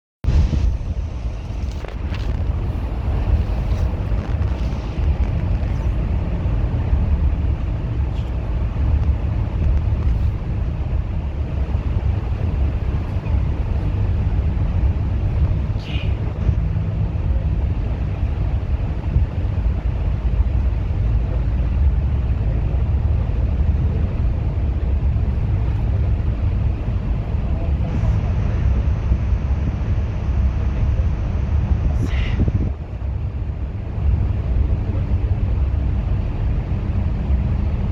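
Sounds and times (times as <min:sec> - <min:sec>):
bus engine rumble: 0:00.2 - 0:37.9
road noise: 0:00.2 - 0:37.9.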